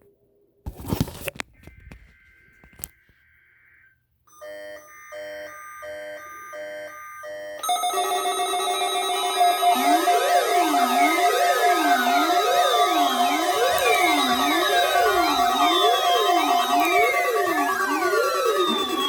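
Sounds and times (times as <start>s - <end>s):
pulsing electronic beeps: 7.6s - 19.0s
sustained synthesizer chord: 7.6s - 19.0s.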